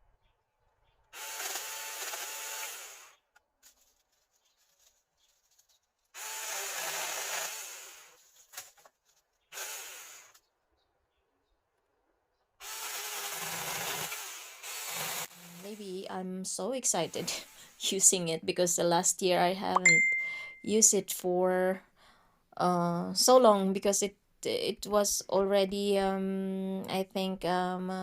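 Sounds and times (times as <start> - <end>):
mini chainsaw cutting branches: 1.1 - 3.2, 6.1 - 8.8, 9.5 - 10.4, 12.6 - 16.1.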